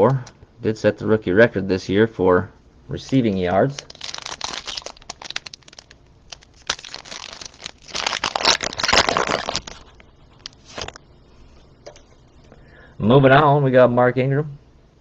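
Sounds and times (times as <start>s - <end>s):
foil wrapper crinkling and tearing: 3.7s - 11.0s.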